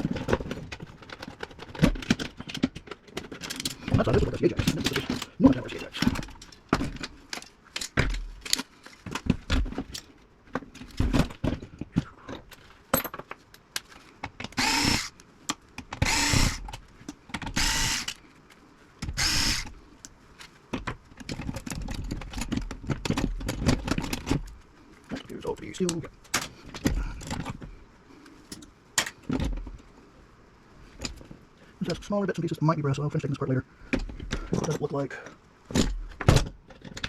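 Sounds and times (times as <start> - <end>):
power drill bursts: 14.6 - 15.2, 16.0 - 16.7, 17.5 - 18.2, 19.1 - 19.7.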